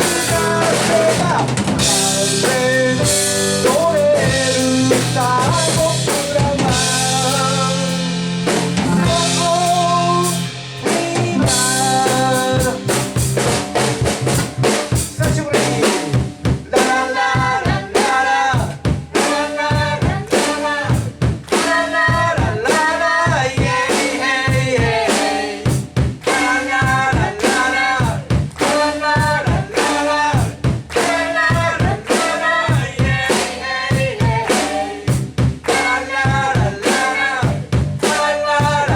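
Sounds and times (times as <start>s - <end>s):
electric guitar lead: 0.0s - 14.8s
keyboard chord: 0.0s - 14.9s
drum kit: 0.0s - 38.9s.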